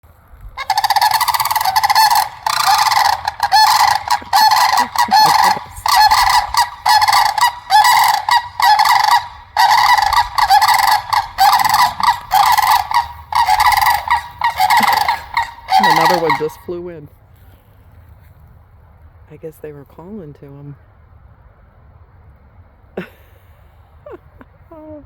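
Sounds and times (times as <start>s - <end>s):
geese honking: 0.6s - 16.8s.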